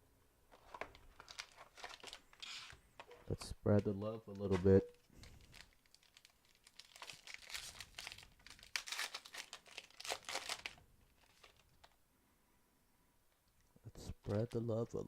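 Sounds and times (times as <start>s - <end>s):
wrapper crinkling and tearing: 0.5s - 2.8s, 4.3s - 12.0s.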